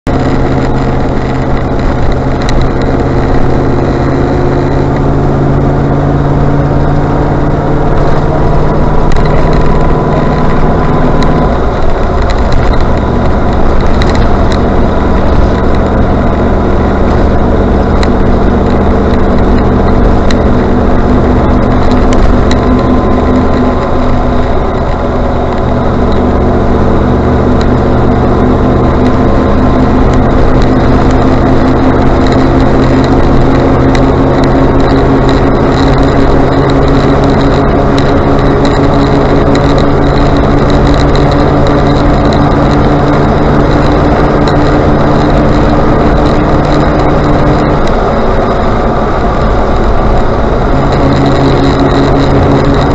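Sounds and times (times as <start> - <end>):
car engine and road noise: 0.0 - 52.9.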